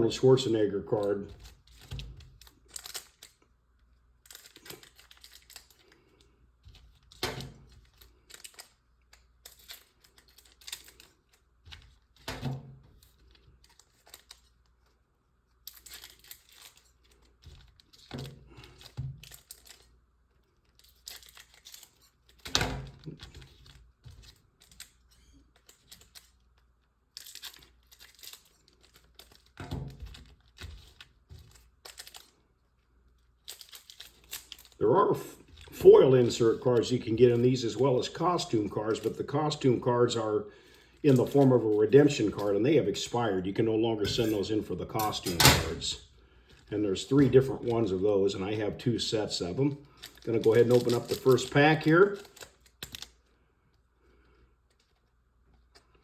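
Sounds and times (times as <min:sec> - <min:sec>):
plastic wrapping crinkling and tearing: 0:04.2 - 0:12.2, 0:47.0 - 0:53.4
scissors cutting plastic: 0:04.2 - 0:14.7, 0:49.9 - 0:53.2.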